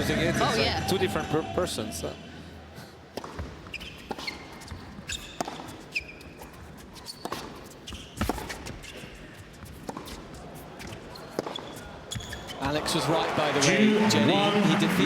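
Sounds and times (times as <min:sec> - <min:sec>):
shoe squeaks: 0:03.2 - 0:12.8.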